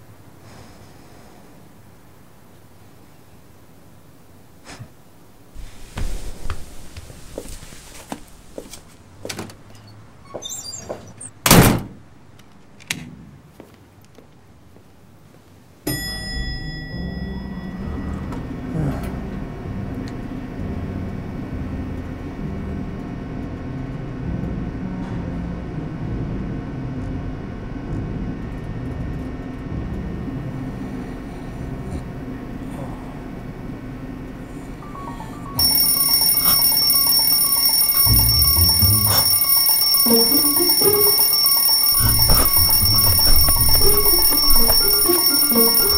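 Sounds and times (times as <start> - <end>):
faint steady tones: 30.0 - 45.9
knocks and clicks: 40.2 - 45.9.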